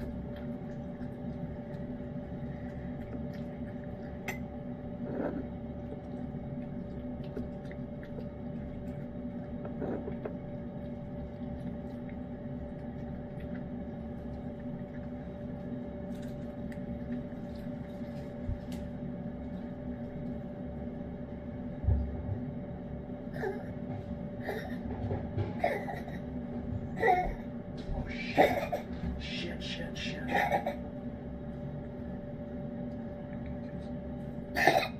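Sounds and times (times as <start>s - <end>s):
cat licking and chewing: 0.0s - 20.8s
steady electrical hum: 0.0s - 34.9s.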